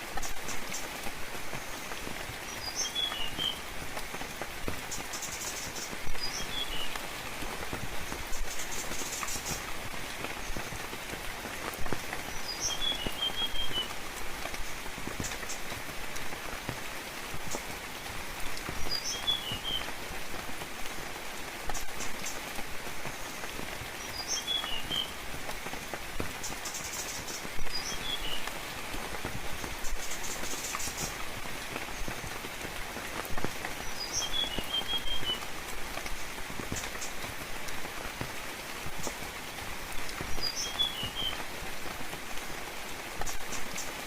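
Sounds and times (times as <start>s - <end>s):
rain pattering on leaves: 0.0s - 44.0s
songbird chirping: 0.2s - 4.2s, 4.8s - 10.8s, 12.2s - 15.8s, 18.6s - 20.0s, 23.1s - 25.2s, 26.4s - 28.9s, 33.8s - 35.5s, 40.0s - 41.4s.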